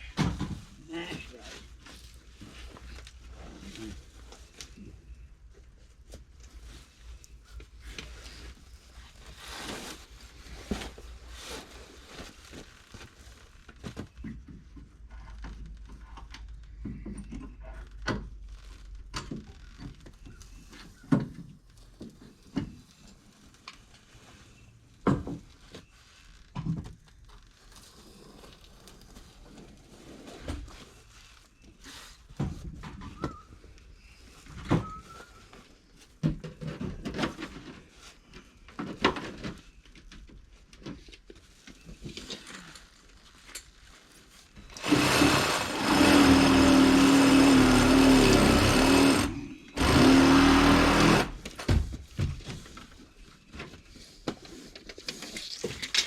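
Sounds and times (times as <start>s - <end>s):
knocks and clatter of hand work: 13.7s - 22.9s, 25.0s - 25.6s, 26.5s - 27.0s, 44.8s - 56.0s
handheld power tool running: 44.7s - 51.5s.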